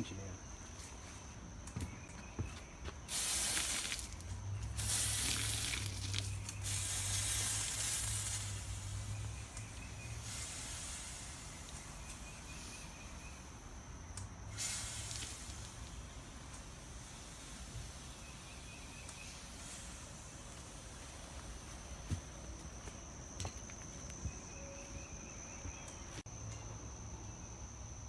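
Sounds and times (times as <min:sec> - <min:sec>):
hot metal hissing in water: 0:03.1 - 0:13.6, 0:14.5 - 0:21.8.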